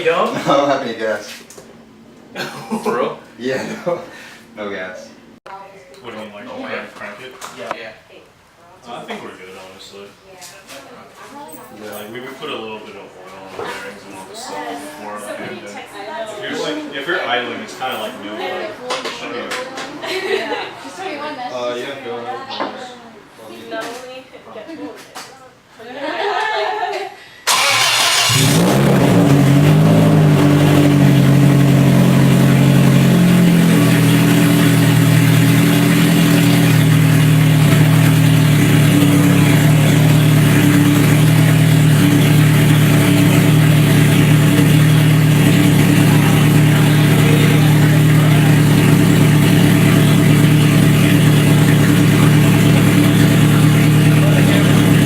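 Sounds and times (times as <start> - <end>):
car engine idling: 27.5 - 55.0.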